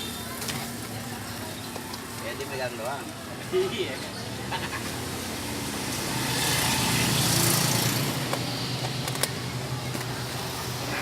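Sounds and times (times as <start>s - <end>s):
motorbike engine passing: 4.7s - 11.0s.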